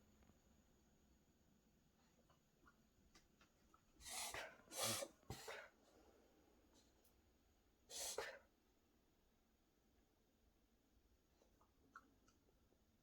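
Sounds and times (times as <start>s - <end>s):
dog reverse sneezing: 4.0s - 5.7s, 7.9s - 8.4s.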